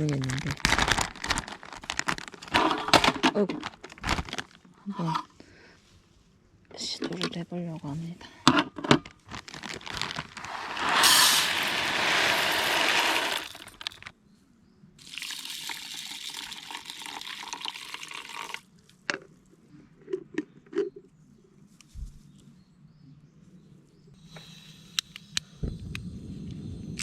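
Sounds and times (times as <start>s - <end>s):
water pouring into pot: 10.5s - 14.0s, 15.0s - 18.6s.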